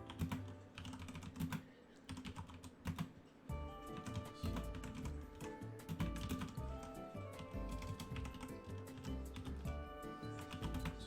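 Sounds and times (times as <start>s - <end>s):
keyboard typing: 0.0s - 11.0s
background music with bass: 3.5s - 11.0s.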